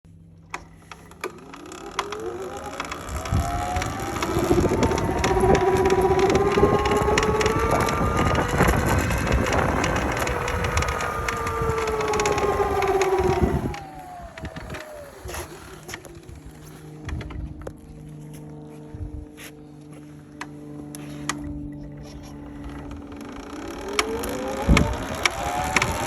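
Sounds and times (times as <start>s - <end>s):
electric motor whining: 0.3s - 18.7s, 20.2s - 26.0s
irregular clicking: 0.5s - 16.6s, 22.8s - 26.0s.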